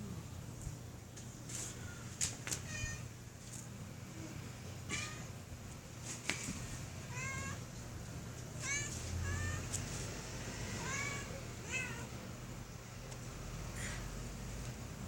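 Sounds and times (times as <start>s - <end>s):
cat meowing: 2.6s - 3.1s, 4.9s - 5.3s, 7.1s - 7.6s, 8.6s - 9.8s, 10.6s - 12.2s.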